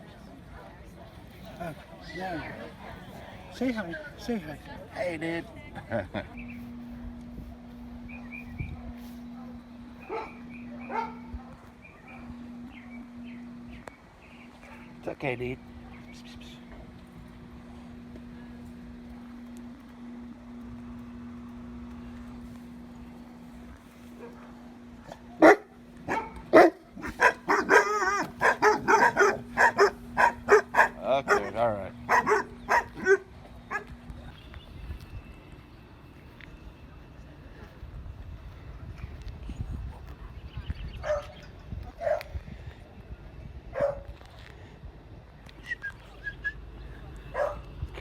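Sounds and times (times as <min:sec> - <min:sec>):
steady low hum: 0:00.0 - 0:48.0
dog yelping: 0:10.0 - 0:11.3, 0:25.4 - 0:33.9
dog barking: 0:10.0 - 0:12.3, 0:25.4 - 0:33.9, 0:41.0 - 0:41.4, 0:42.0 - 0:42.3, 0:43.7 - 0:44.1, 0:47.3 - 0:47.7.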